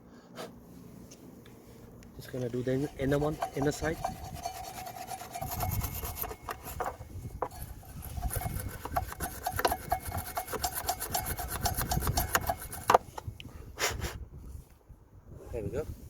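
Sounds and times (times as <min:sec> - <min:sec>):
wire brush rasping on metal: 0:02.4 - 0:13.1.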